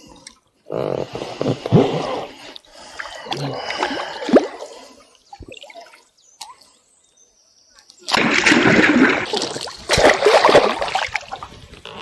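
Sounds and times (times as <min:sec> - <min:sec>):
fish thrashing water splashing: 0:08.1 - 0:11.5.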